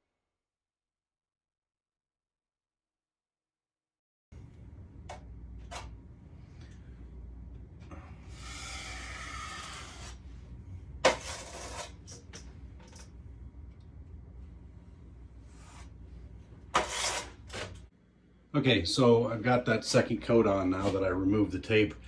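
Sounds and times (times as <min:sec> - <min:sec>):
low steady hum: 0:04.3 - 0:22.0
drywall knife scraping: 0:08.3 - 0:10.2, 0:11.0 - 0:12.3, 0:16.7 - 0:17.8.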